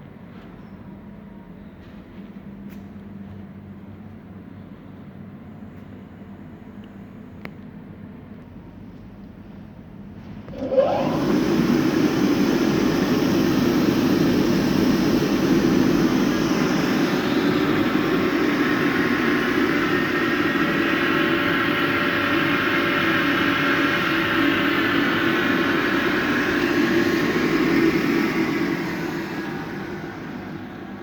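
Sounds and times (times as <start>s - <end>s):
vacuum cleaner whining: 10.5s - 31.0s.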